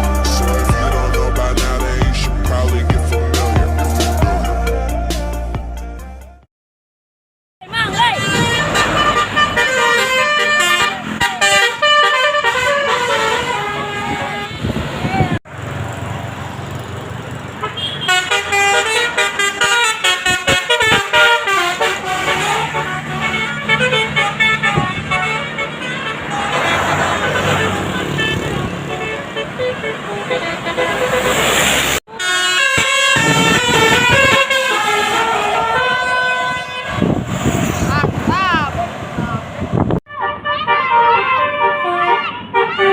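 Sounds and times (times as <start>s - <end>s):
melodic bus horn tune: 0.0s - 6.5s, 7.6s - 14.8s, 17.6s - 37.4s, 40.1s - 42.9s.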